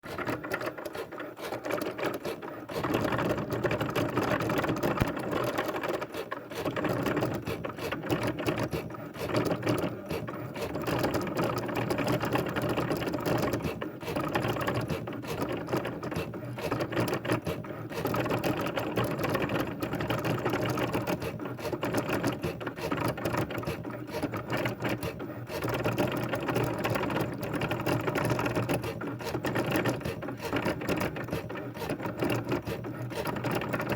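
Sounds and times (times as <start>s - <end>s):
rapid mechanical clatter: 0.0s - 33.9s.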